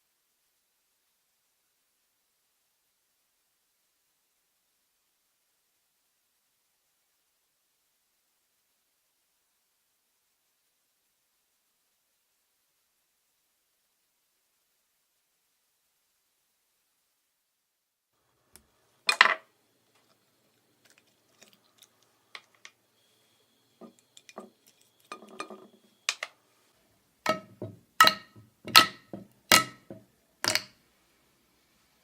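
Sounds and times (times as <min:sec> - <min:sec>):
hard objects clinking: 0:20.8 - 0:22.8, 0:23.8 - 0:26.3, 0:27.3 - 0:30.7.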